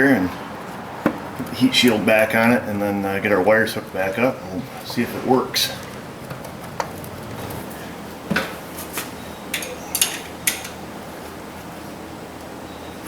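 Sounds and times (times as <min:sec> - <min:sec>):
metal tools clinking on bolts: 0:09.5 - 0:10.8.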